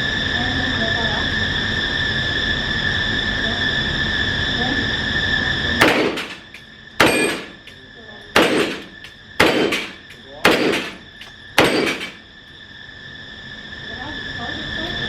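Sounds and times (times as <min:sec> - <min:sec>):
high whine with hiss: 0:00.0 - 0:15.0
gunshots: 0:05.8 - 0:07.7, 0:08.4 - 0:12.2.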